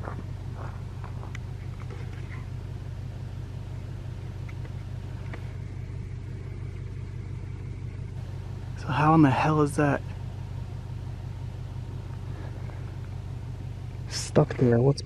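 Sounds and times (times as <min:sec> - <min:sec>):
vehicle engine idling: 0:00.0 - 0:15.0.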